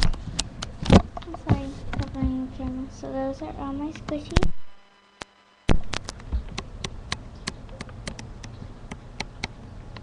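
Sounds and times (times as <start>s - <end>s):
sharp clicks: 5.2s - 10.0s.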